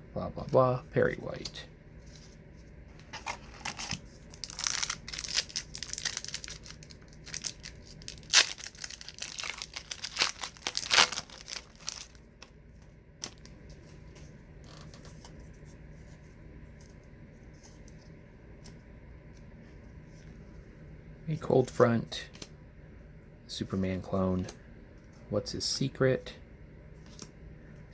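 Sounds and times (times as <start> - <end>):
wrapper tearing and crinkling: 3.6 - 12.2.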